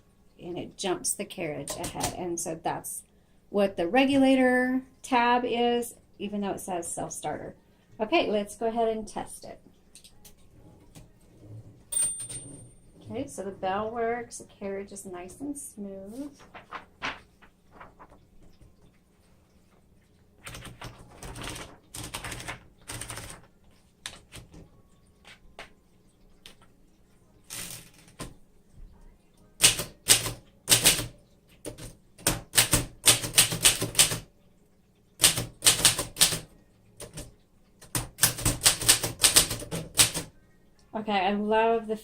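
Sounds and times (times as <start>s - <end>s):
typewriter keys striking: 20.4s - 23.4s, 29.6s - 31.1s, 31.7s - 34.2s, 35.2s - 36.4s, 37.0s - 40.3s.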